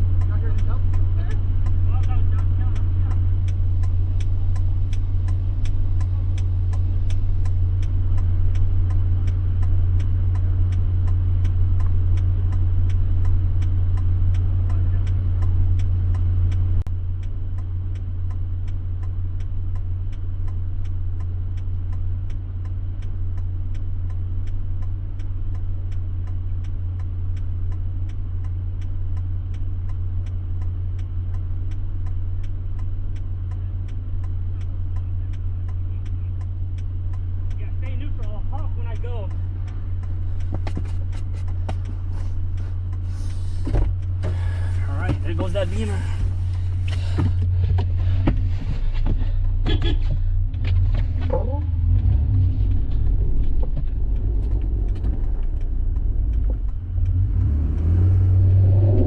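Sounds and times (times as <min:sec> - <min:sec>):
turn-signal flasher ticking: 0:00.0 - 0:50.6, 0:51.3 - 0:59.0
vehicle engine droning: 0:00.0 - 0:59.0
click: 0:49.8 - 0:59.0.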